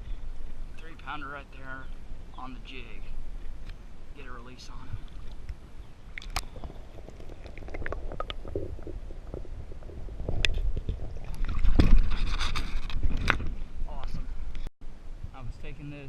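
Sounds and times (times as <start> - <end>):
water sloshing and splashing: 5.0 - 13.8.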